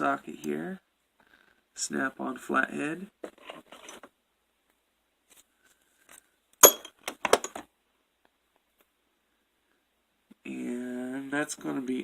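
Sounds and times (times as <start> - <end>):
metal tools clinking: 6.6 - 7.6.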